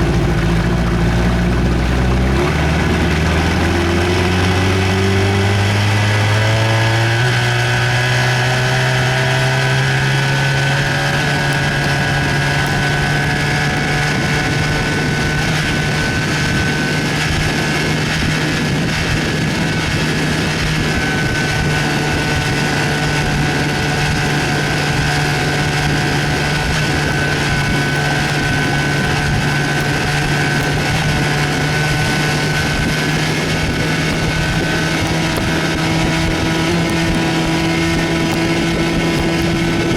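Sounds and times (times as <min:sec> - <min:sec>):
outboard motor running: 0:00.0 - 0:39.9.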